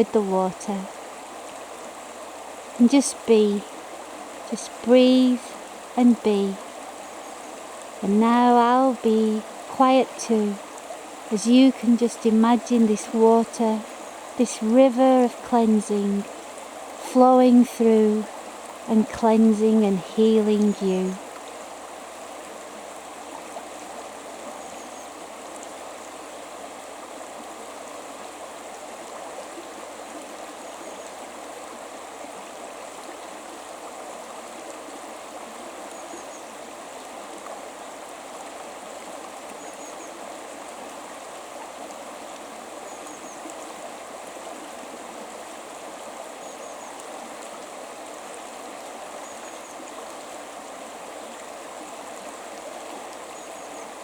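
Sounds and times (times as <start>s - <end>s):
river flowing: 0.0s - 54.0s.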